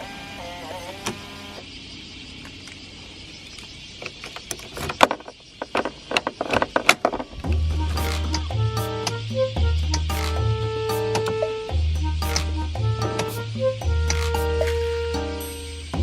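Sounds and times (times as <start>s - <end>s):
steady hiss: 7.3s - 16.0s
short musical phrase: 7.5s - 16.0s.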